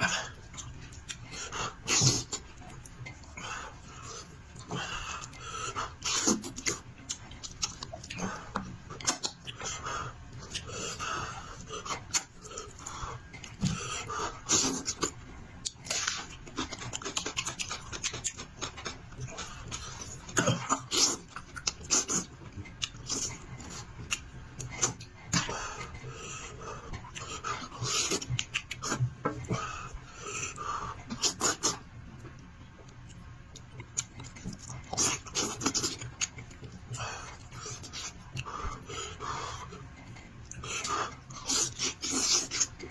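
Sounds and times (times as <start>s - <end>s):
wet chewing and lip smacking: 4.5s - 11.0s, 14.5s - 26.0s, 26.9s - 29.6s, 31.1s - 42.9s.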